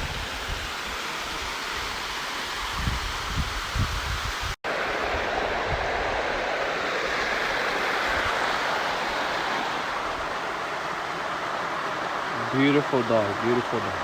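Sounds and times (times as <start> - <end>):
waterfall rushing: 4.7 - 14.0.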